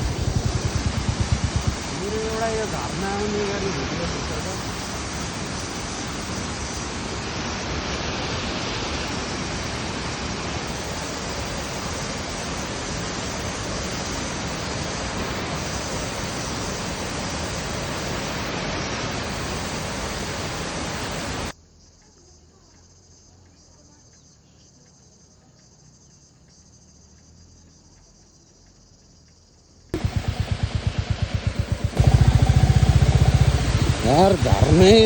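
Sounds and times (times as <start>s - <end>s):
waterfall rushing: 0.0s - 21.5s, 30.0s - 35.0s
faint insect chirr: 0.0s - 35.0s.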